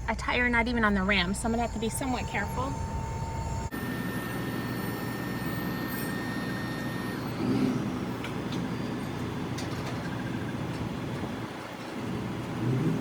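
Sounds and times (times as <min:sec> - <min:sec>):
vehicle engine running: 0:02.9 - 0:13.0.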